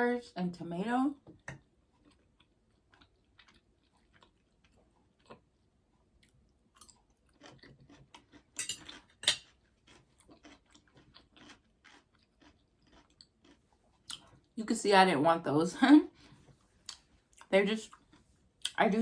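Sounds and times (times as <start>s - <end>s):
chewing crunchy food: 1.4s - 14.6s.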